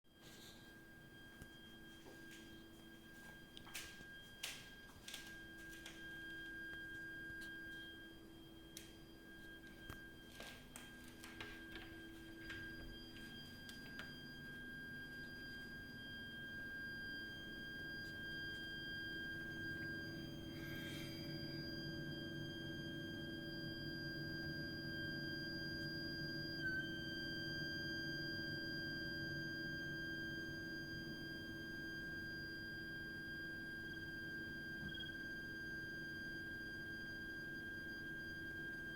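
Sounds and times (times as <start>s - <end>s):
pipework high-pitched whistle: 0.1s - 38.9s
low hum: 33.8s - 38.9s.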